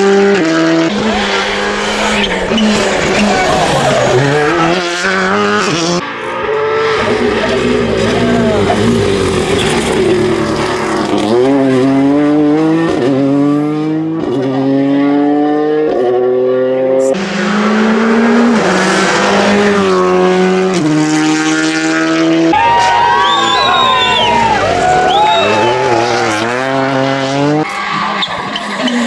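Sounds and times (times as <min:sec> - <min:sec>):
rally car engine accelerating: 0:00.0 - 0:29.0
hissing rush: 0:00.7 - 0:05.7.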